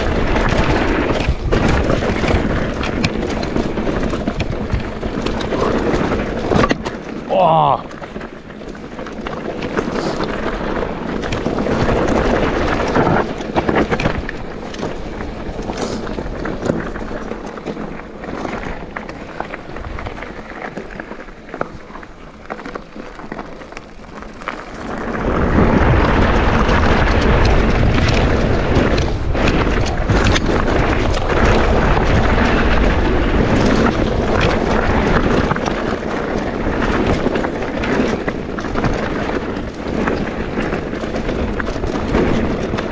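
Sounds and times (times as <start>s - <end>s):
bike rattling and clicking: 0.0s - 42.9s
tyres rolling over loose ground: 0.0s - 42.9s
wind buffeting microphone: 0.0s - 42.9s.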